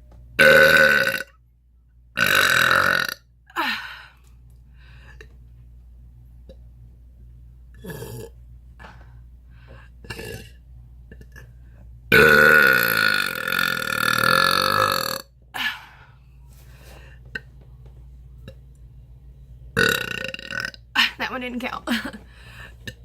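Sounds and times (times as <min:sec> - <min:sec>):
woman burping: 0:00.4 - 0:01.3, 0:02.2 - 0:04.0, 0:07.8 - 0:08.4, 0:10.0 - 0:10.6, 0:12.1 - 0:16.0, 0:19.8 - 0:21.2.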